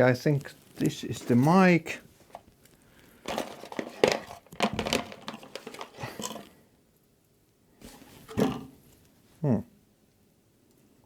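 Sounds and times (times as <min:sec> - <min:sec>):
packaging rustling: 0:00.4 - 0:06.5.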